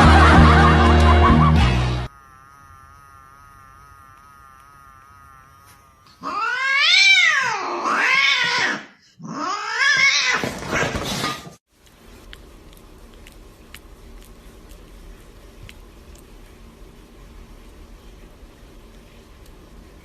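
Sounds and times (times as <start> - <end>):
cat yowling: 6.2 - 10.6.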